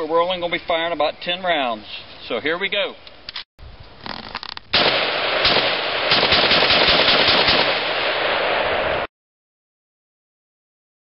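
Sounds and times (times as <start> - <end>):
rifle rapid fire: 4.7 - 9.0.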